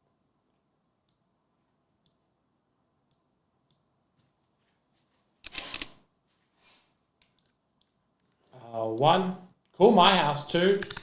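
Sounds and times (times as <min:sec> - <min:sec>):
computer mouse clicks: 0:05.4 - 0:06.0, 0:10.8 - 0:11.0.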